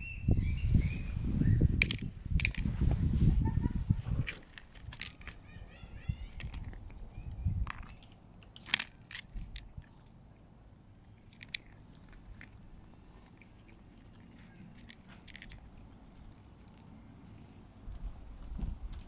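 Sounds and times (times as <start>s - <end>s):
cat chewing crunchy treats: 6.3s - 18.0s.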